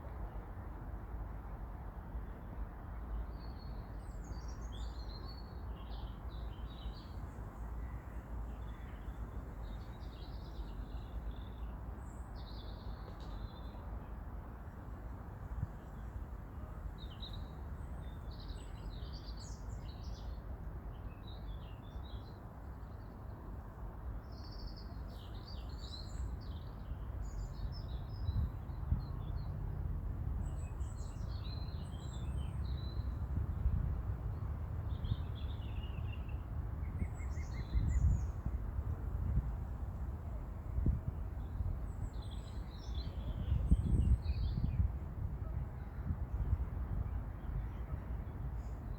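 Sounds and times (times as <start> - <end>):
songbirds singing and chirping: 30.4 - 33.8, 34.9 - 39.5, 40.8 - 44.9.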